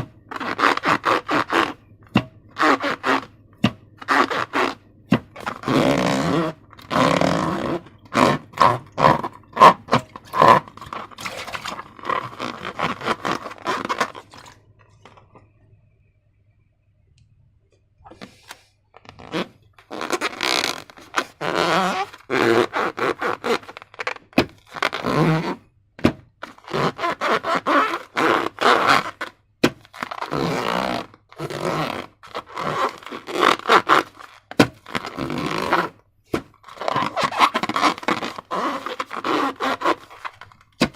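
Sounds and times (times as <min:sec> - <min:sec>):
slime squishing by hand: 0:00.0 - 0:15.3.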